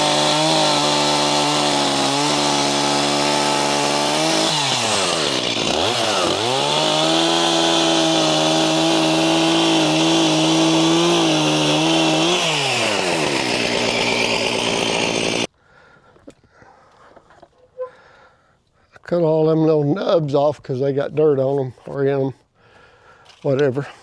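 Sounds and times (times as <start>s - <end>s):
chainsaw engine revving: 0.0s - 15.5s.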